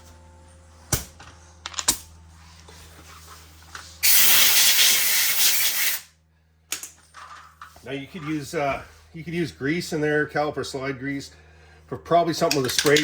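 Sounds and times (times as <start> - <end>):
compressed air blowgun hissing: 4.0 - 6.1.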